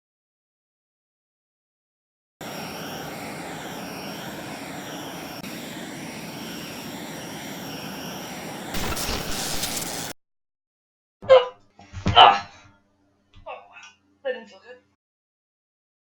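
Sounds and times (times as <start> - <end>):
mechanical engine-like drone: 2.4 - 10.1
rough rush of noise: 2.4 - 10.2
thin high whine: 2.4 - 10.2.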